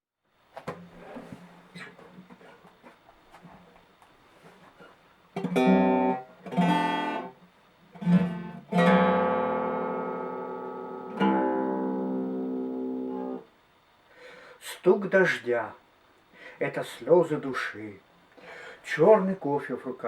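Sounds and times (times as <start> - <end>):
acoustic guitar strumming: 5.4 - 13.5.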